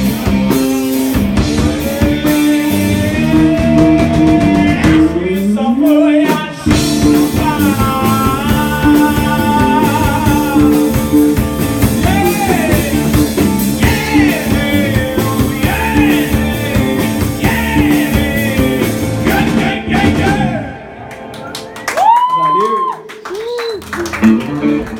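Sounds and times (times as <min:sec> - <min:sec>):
live rock band playing: 0:00.0 - 0:22.3, 0:23.8 - 0:24.9
man singing: 0:01.5 - 0:21.0.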